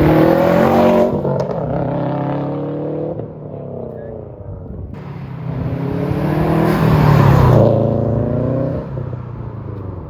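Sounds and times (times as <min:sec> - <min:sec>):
car driving past: 0:05.0 - 0:10.0.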